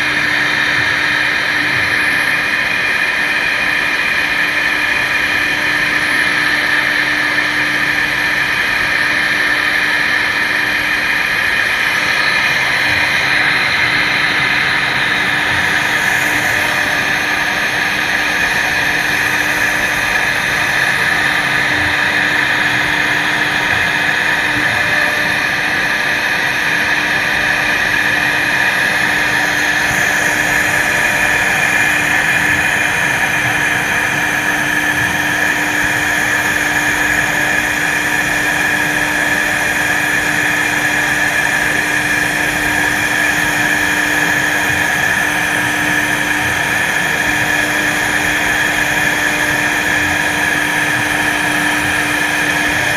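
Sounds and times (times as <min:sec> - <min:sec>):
cnc router spindle running: 0:00.0 - 0:52.9
loud cutting noise: 0:00.0 - 0:52.9.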